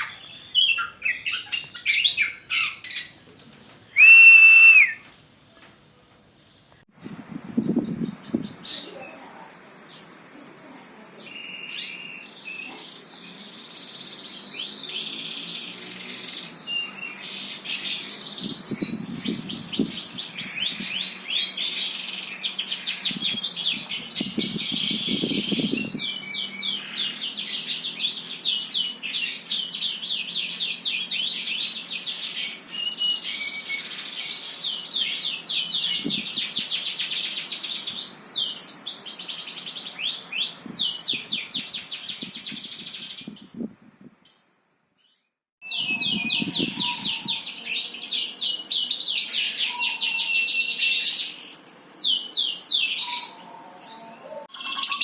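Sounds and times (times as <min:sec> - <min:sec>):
songbird singing trills: 0:00.0 - 0:05.6, 0:45.6 - 0:55.0.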